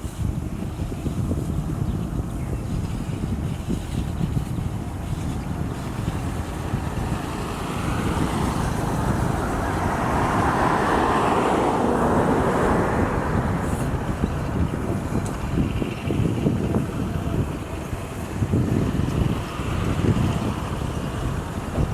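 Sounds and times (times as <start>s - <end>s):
wind and road noise rumble: 0.0s - 21.9s
vehicle passing: 5.7s - 16.6s.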